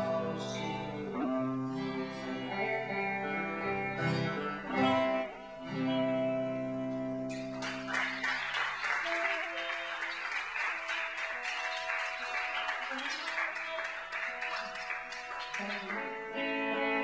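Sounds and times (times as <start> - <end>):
acoustic guitar strumming: 0.0 - 17.0
audience applause: 7.3 - 16.2.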